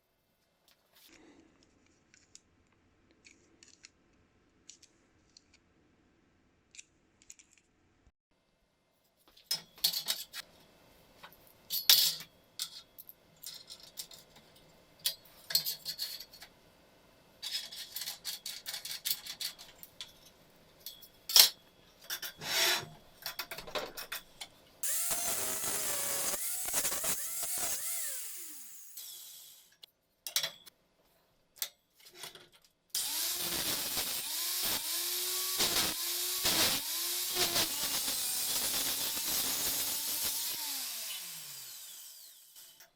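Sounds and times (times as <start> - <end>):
angle grinder running: 24.8 - 29.7, 33.0 - 42.8.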